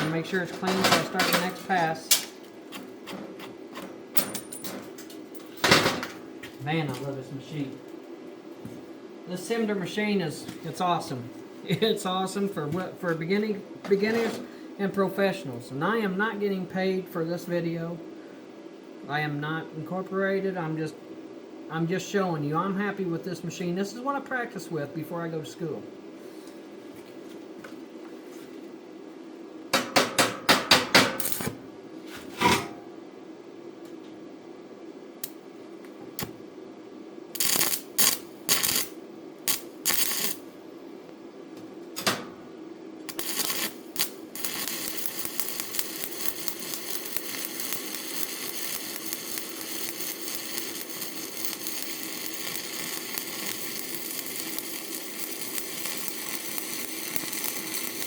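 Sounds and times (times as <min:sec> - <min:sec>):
welding arc crackling: 0:31.2 - 0:31.5, 0:37.4 - 0:40.5, 0:43.1 - 0:58.0.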